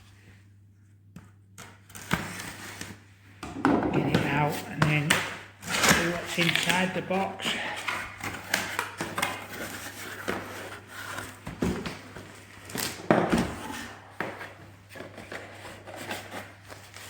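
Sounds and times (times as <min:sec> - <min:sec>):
cardboard box rustling and scraping: 0:08.2 - 0:17.0.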